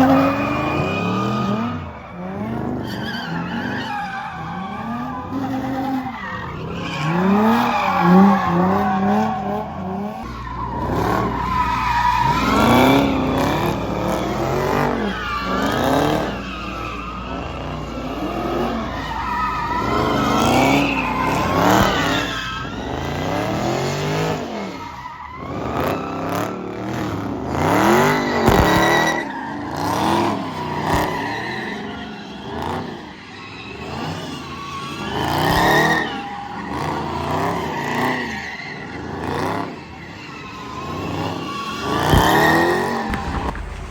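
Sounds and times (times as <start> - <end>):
car engine revving hard: 4.8 - 24.8, 25.4 - 31.2.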